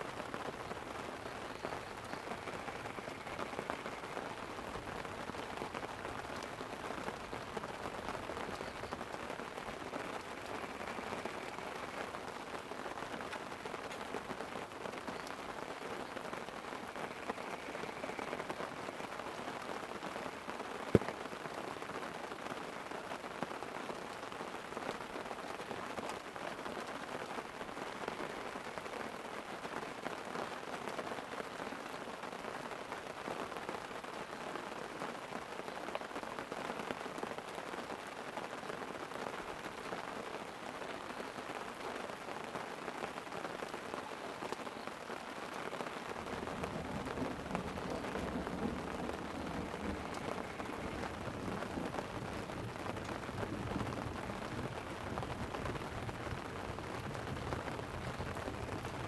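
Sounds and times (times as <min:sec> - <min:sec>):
light rain on a tent: 0:00.0 - 0:59.0
sharp pop: 0:21.0 - 0:21.2
thunder rumble: 0:46.0 - 0:59.0.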